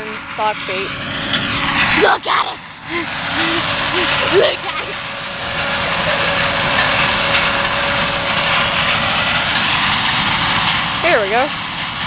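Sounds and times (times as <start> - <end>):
harvester engine droning: 0.0 - 12.0.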